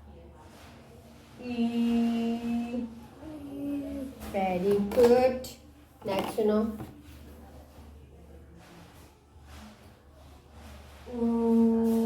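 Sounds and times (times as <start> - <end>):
woman holding a steady vocal sound: 1.4 - 4.3, 11.1 - 12.0.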